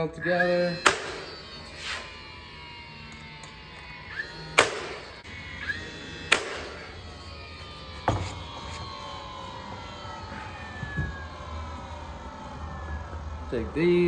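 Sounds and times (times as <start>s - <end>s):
nail gun shots into wood: 0.8s - 1.3s, 4.6s - 5.1s, 6.3s - 6.8s.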